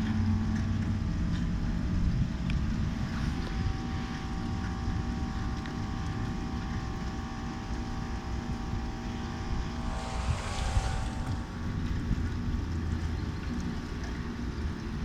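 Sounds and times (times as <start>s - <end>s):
wind buffeting microphone: 9.3s - 12.3s.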